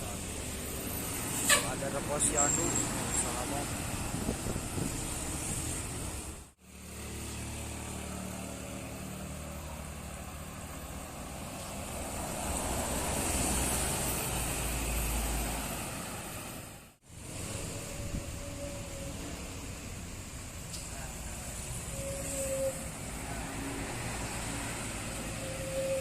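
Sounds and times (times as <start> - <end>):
diesel bus engine passing by: 0.0 - 26.0.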